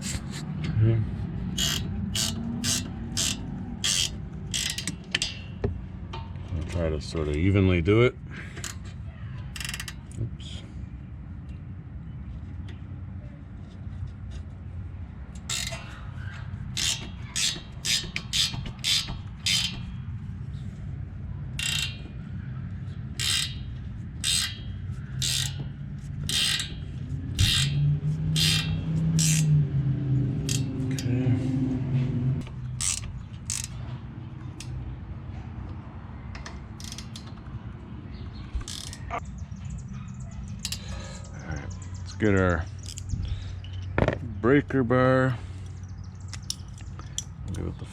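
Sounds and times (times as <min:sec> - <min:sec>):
wrench clicking on metal bolt: 0:01.6 - 0:06.3, 0:09.5 - 0:10.2, 0:15.4 - 0:20.0, 0:21.5 - 0:22.2, 0:23.1 - 0:29.6, 0:30.4 - 0:31.1, 0:32.4 - 0:33.8, 0:36.3 - 0:37.6, 0:38.5 - 0:39.2, 0:42.8 - 0:44.0, 0:46.3 - 0:47.6.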